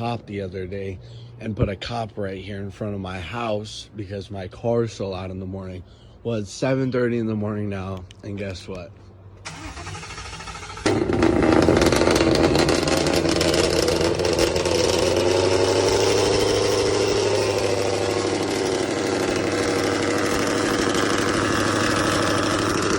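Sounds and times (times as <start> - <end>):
loud rough car exhaust: 9.5 - 22.9.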